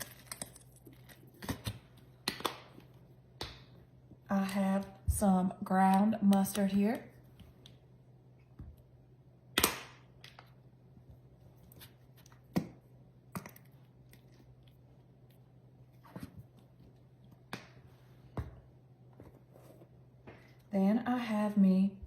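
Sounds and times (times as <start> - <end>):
faint steady hum: 0.0 - 22.0.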